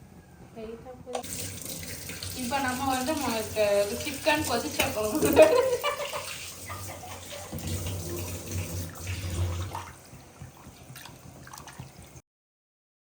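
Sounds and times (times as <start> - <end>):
curry bubbling in a pot: 1.8 - 12.2.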